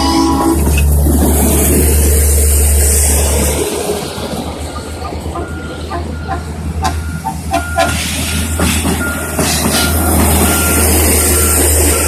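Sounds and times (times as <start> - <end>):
low engine rumble: 0.0 - 12.0
backup alarm beeping: 5.4 - 8.0, 9.0 - 12.0.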